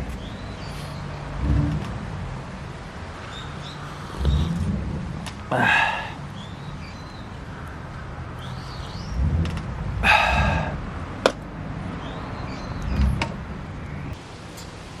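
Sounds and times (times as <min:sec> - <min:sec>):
faint bird chirps: 0:03.2 - 0:04.8, 0:05.4 - 0:10.7.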